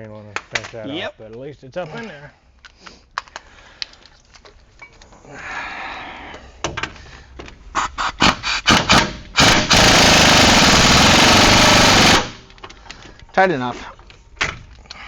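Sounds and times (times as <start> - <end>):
impact wrench hammering: 8.2 - 12.5.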